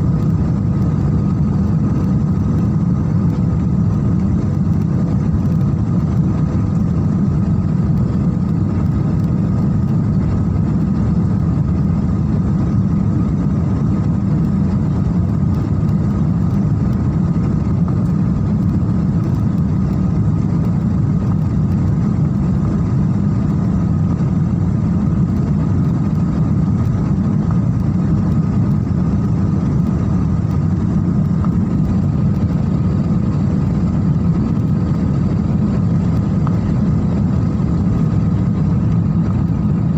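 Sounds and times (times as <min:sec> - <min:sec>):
faint steady hum: 0:00.0 - 0:39.9
jet cabin engine rumble: 0:00.0 - 0:39.9.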